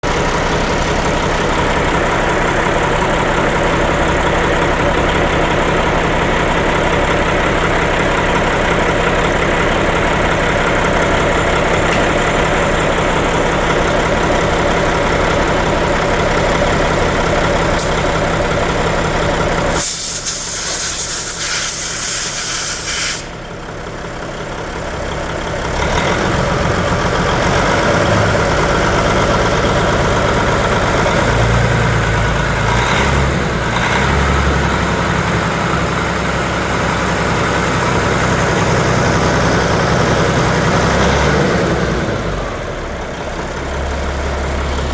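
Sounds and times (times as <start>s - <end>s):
truck engine idling: 0.0s - 44.9s
air hissing: 17.8s - 18.0s, 19.7s - 23.4s.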